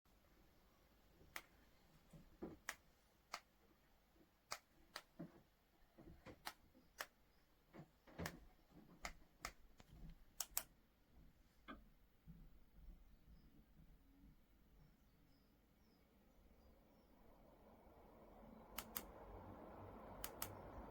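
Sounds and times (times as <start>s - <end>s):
light sharp clicks and taps: 20.2s - 20.9s.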